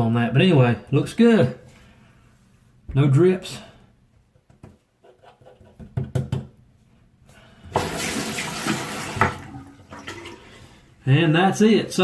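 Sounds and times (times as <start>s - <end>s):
tap water running into sink: 7.7s - 10.5s.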